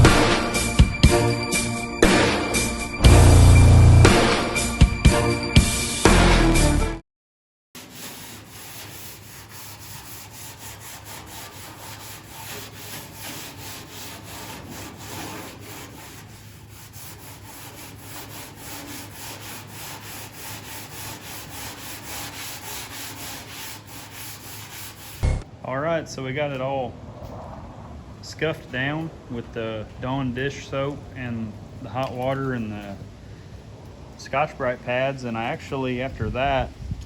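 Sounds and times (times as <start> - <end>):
scouring pad rubbing on paint: 7.8 - 25.2.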